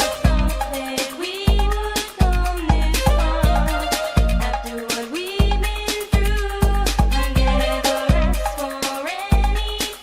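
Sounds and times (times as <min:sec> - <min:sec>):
funk dance track: 0:00.0 - 0:10.0
snare and hi-hat hits: 0:00.0 - 0:10.0
heavy bass drum kicks: 0:05.4 - 0:08.5.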